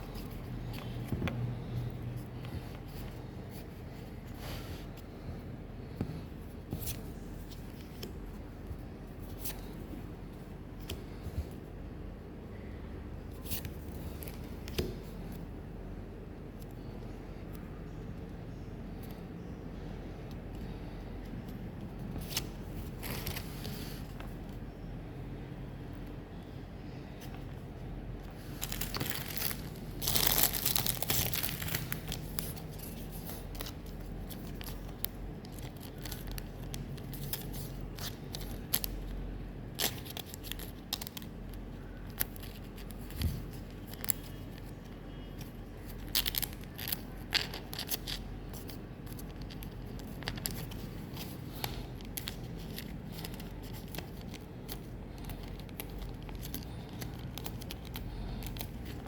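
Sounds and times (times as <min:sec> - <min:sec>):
cards clicking and scraping: 0:20.3 - 0:24.7, 0:28.2 - 0:59.0
foil wrappers crinkling and tearing: 0:28.4 - 0:39.1, 0:45.7 - 0:59.0.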